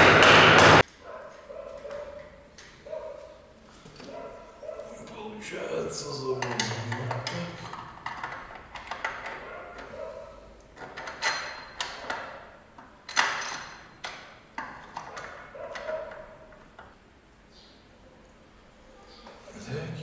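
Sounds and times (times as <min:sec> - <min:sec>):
metal tools knocking on metal: 0:06.4 - 0:10.2, 0:10.8 - 0:17.0.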